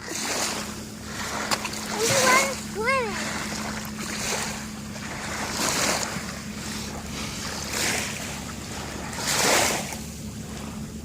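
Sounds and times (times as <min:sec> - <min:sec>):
small waves washing ashore: 0:00.0 - 0:11.0.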